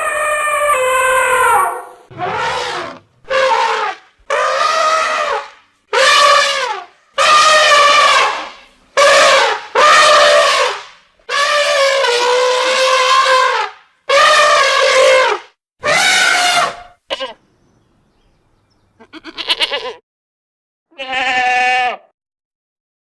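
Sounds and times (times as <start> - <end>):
animal drawn-out calls: 0.0 - 13.6, 14.2 - 17.4, 19.0 - 20.0.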